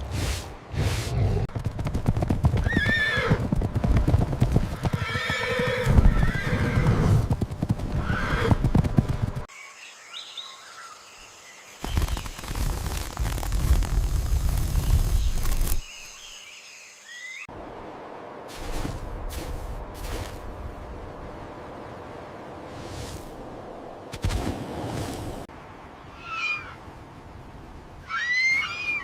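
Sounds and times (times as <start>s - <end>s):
hoofbeats clattering: 1.5s - 9.5s
horses whinnying: 2.6s - 3.4s, 4.8s - 7.3s, 7.9s - 8.7s.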